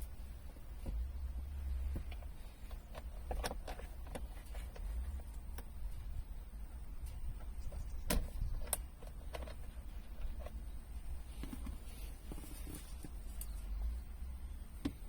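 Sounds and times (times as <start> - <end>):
low steady rumble: 0.0 - 15.0
sharp clicks and light knocks: 1.9 - 5.7, 7.0 - 10.6.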